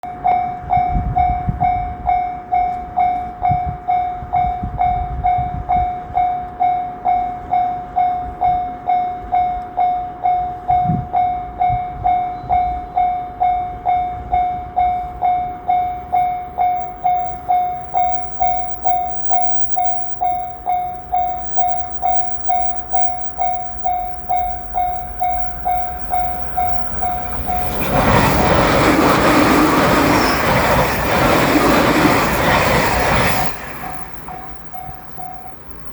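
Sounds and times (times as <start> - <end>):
railroad crossing bell ringing: 0.0 - 35.9
train rushing past: 15.7 - 35.9.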